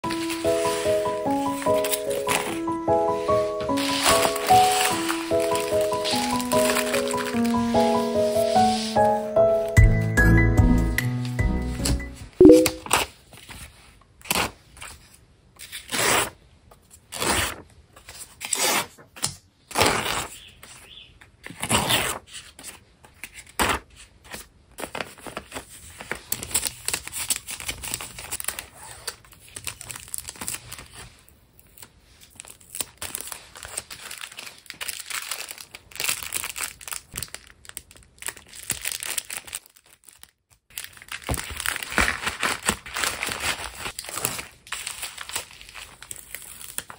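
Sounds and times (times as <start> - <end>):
paper and plastic crinkling: 0.0 - 9.8, 20.0 - 46.9
paper or tape tearing: 3.7 - 9.1, 15.6 - 16.4, 17.1 - 17.6, 18.4 - 19.0, 19.7 - 20.5, 21.5 - 22.4.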